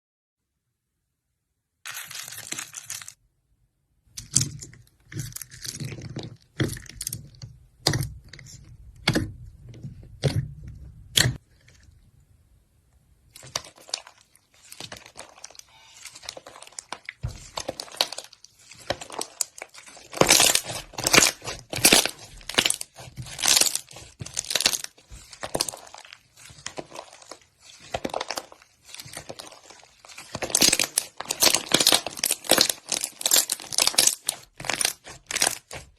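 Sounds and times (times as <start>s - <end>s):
slime clicking and popping: 30.2s - 35.8s.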